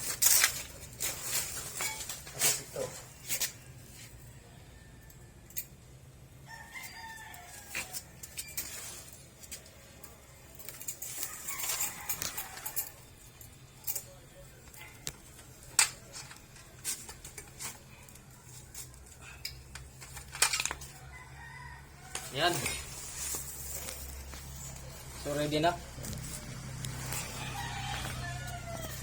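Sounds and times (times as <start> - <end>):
rustling: 0.0 - 4.2, 22.0 - 29.0
metal clicks and clinks: 15.0 - 18.2.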